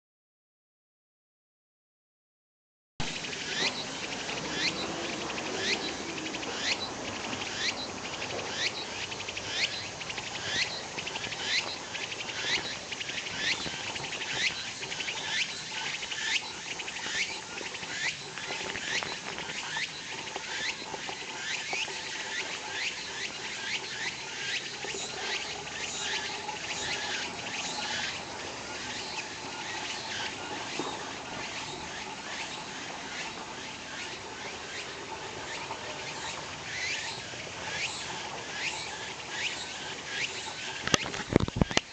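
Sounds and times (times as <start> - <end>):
cicada buzzing: 3.0 - 41.9
cicada song phrases: 3.1 - 41.9.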